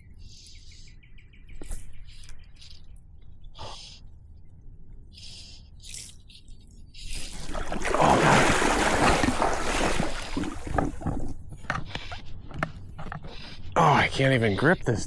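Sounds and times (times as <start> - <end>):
water splashing and sloshing: 7.1 - 12.5.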